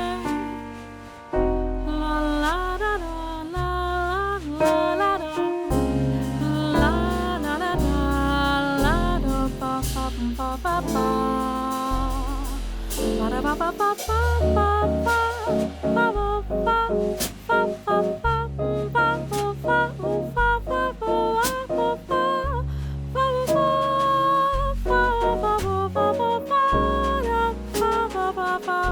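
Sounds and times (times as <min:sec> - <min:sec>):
double bass: 0:00.0 - 0:28.9
piano: 0:00.0 - 0:28.9
light cymbal strokes: 0:04.7 - 0:18.2.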